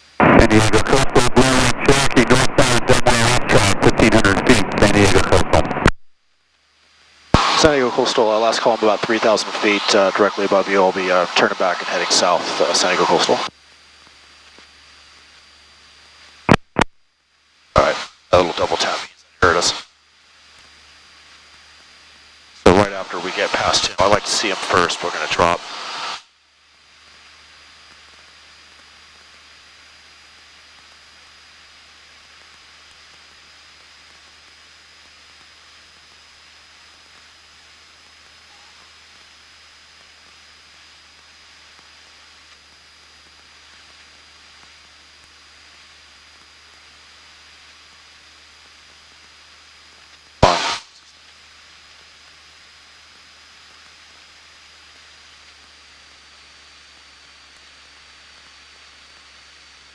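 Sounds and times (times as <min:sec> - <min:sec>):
intercom hiss: 0:00.2 - 0:05.9, 0:07.3 - 0:13.5, 0:17.7 - 0:20.0, 0:22.6 - 0:26.3, 0:50.4 - 0:51.7
loud crackle on the line: 0:23.6 - 0:59.9.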